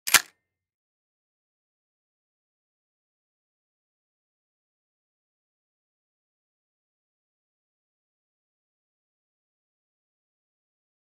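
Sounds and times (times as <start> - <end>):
shotgun being racked: 0.1 - 0.3.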